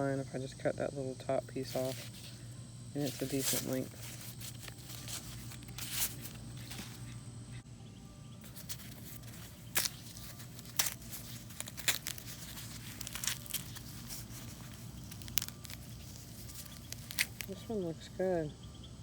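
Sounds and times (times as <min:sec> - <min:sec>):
corn husks rustling and crackling: 0:01.4 - 0:07.2, 0:08.4 - 0:18.5
corn snapping: 0:03.0 - 0:07.1, 0:08.4 - 0:17.8.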